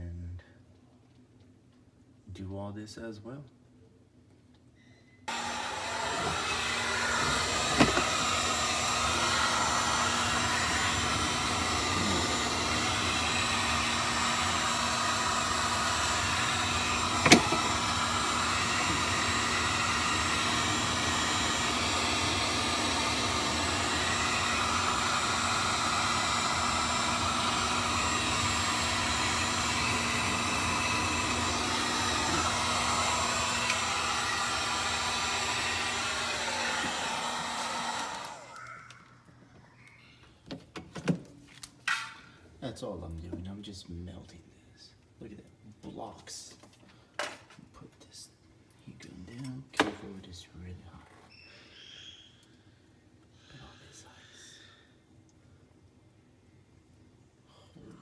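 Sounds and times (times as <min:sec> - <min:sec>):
heat gun blowing: 0:05.3 - 0:38.8.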